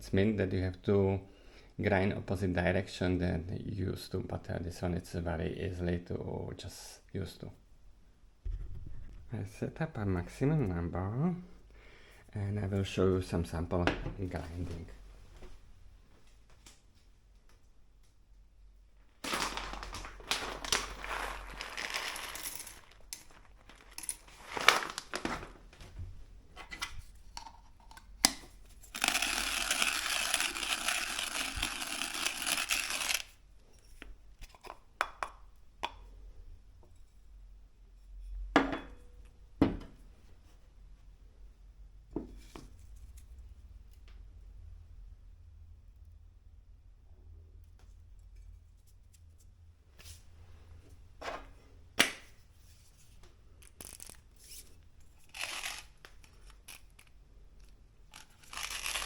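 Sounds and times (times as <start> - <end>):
grinder crunching coffee beans: 19.2 - 25.6, 28.9 - 33.4, 55.2 - 59.0.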